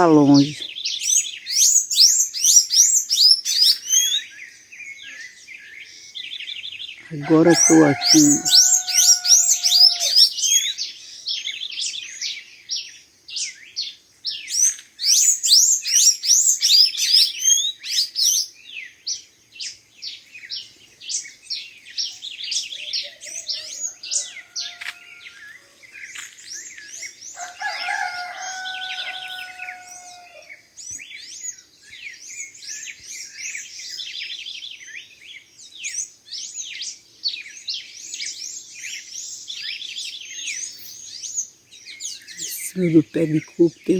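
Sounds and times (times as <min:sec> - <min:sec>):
songbirds chirping and trilling: 0:00.0 - 0:43.9.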